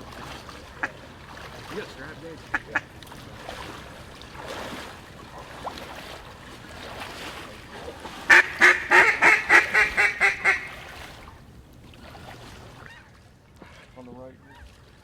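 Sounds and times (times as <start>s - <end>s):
duck call quacks: 2.5s - 2.9s, 8.3s - 10.8s.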